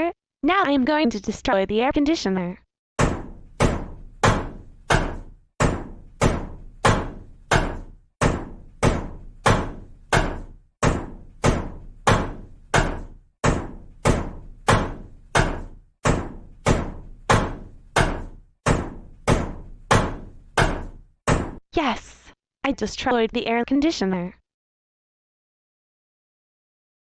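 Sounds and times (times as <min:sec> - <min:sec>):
hammer striking: 0:03.0 - 0:21.6.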